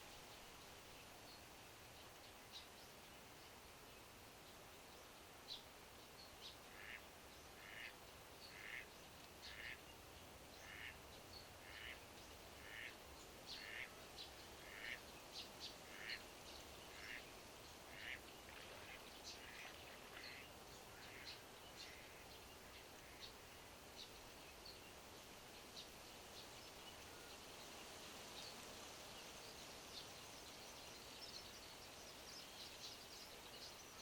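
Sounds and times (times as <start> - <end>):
small birds chirping: 5.0 - 23.4.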